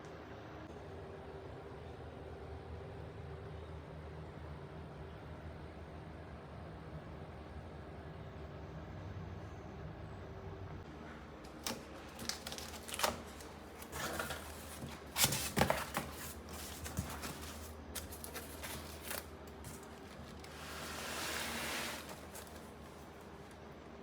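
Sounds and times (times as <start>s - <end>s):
rustling: 11.6s - 23.6s.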